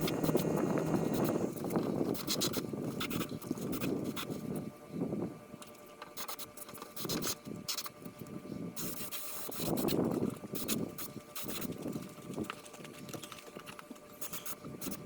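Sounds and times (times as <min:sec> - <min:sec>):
air spray gun hissing: 0:08.8 - 0:11.6.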